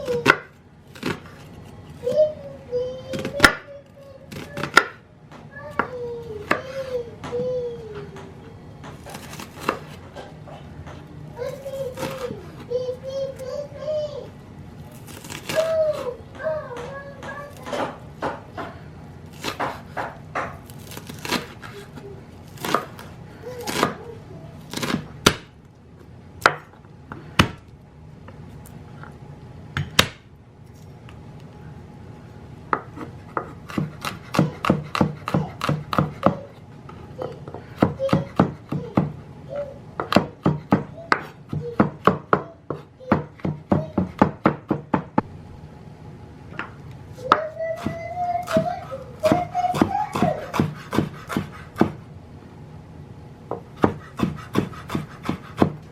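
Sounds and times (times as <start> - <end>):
knife chopping on cutting board: 0.0 - 1.5, 4.3 - 5.0, 5.8 - 7.4, 8.9 - 10.2, 15.0 - 21.8, 22.6 - 24.0, 24.7 - 25.5, 32.7 - 36.6, 37.4 - 39.2, 40.0 - 45.3, 47.3 - 52.0, 53.5 - 55.9.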